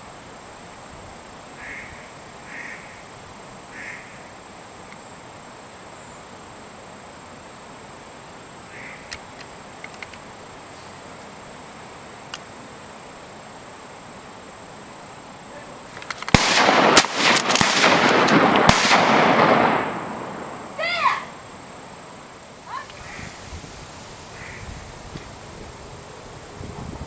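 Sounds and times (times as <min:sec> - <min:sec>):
steady hiss: 0:00.0 - 0:27.0
sharp clicks: 0:09.0 - 0:10.2, 0:15.9 - 0:19.0.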